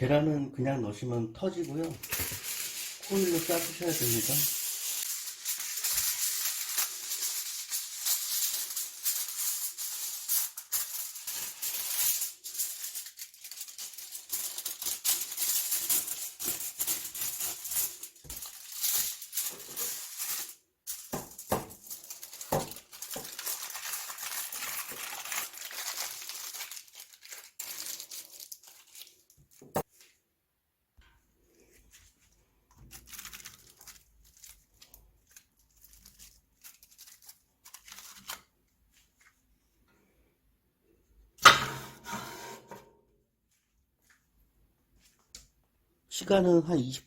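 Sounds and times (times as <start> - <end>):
aluminium foil crinkling: 1.5 - 30.1, 31.6 - 39.4.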